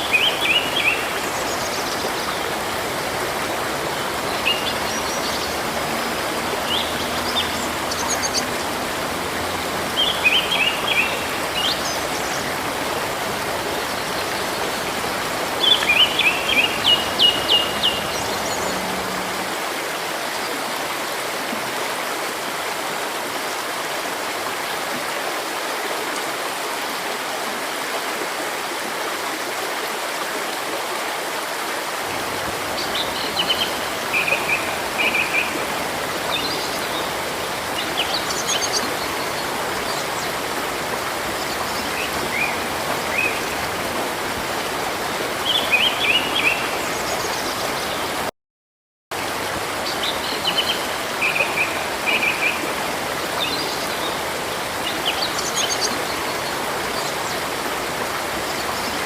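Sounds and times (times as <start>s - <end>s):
songbirds chirping: 0.0s - 19.6s
river flowing: 0.0s - 48.3s, 49.2s - 59.0s.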